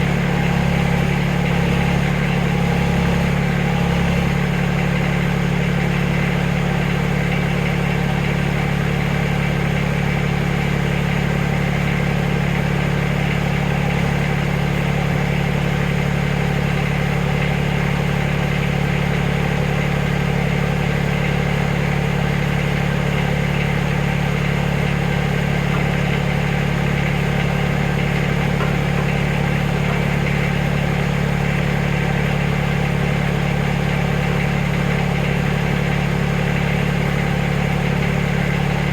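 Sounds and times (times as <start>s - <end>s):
backhoe engine running: 0.0s - 38.9s.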